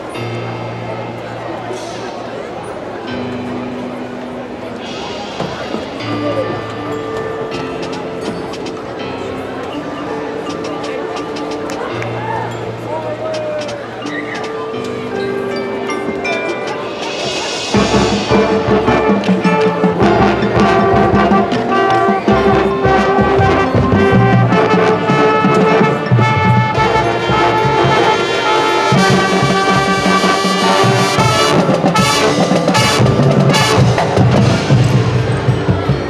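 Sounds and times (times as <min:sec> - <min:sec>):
drumline percussion: 0:04.8 - 0:09.4, 0:10.4 - 0:12.3, 0:13.2 - 0:36.0
brass section playing chords: 0:16.8 - 0:35.2.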